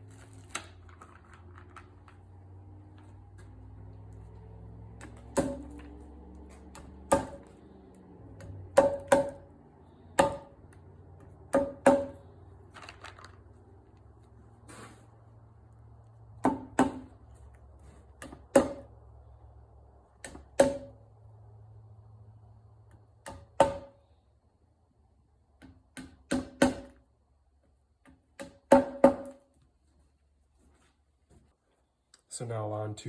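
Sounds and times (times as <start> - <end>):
hammer tapping dowels: 10.2 - 12.2.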